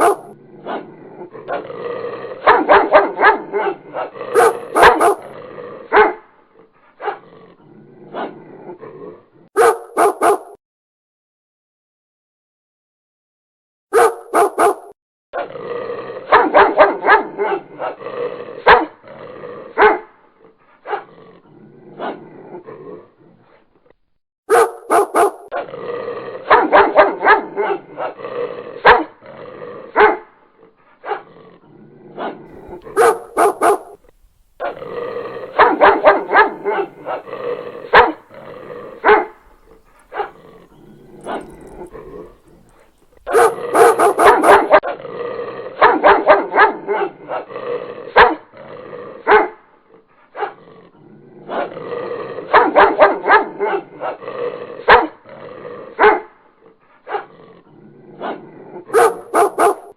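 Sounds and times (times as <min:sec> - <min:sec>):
dog barking: 0:00.0 - 0:00.9, 0:02.4 - 0:06.3, 0:07.0 - 0:07.2, 0:09.6 - 0:10.6, 0:13.9 - 0:15.5, 0:16.3 - 0:18.0, 0:18.6 - 0:19.0, 0:19.8 - 0:20.1, 0:20.8 - 0:21.1, 0:24.5 - 0:25.7, 0:26.5 - 0:28.2, 0:28.8 - 0:29.2, 0:30.0 - 0:30.3, 0:31.0 - 0:31.3, 0:32.2 - 0:45.0, 0:45.8 - 0:47.5, 0:48.2 - 0:48.4, 0:49.3 - 0:49.6, 0:50.4 - 0:50.6, 0:52.5 - 0:54.2, 0:54.9 - 0:55.2, 0:56.0 - 0:56.4, 0:57.1 - 0:57.3, 0:58.2 - 0:59.9.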